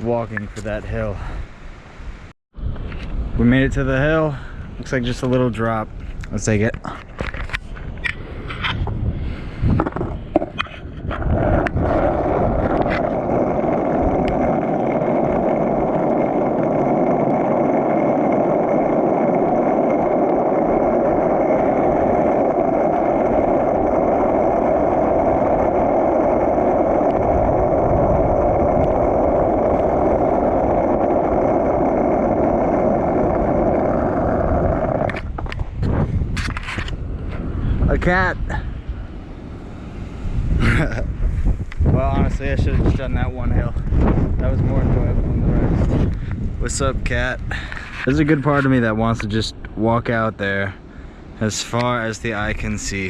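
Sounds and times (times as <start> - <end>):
skateboard wheels rolling on asphalt: 0.0 - 53.0
skateboard clicks: 9.8 - 37.0.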